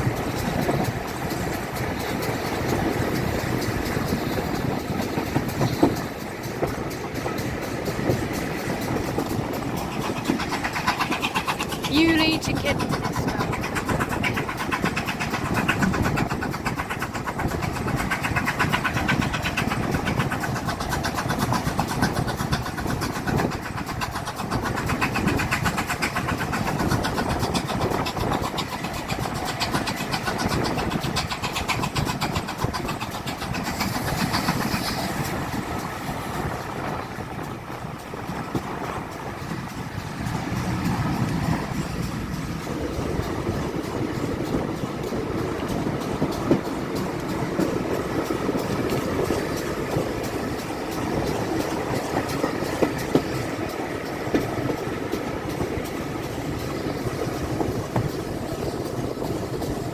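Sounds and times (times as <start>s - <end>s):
train running rumble and rattle: 0.0s - 59.9s.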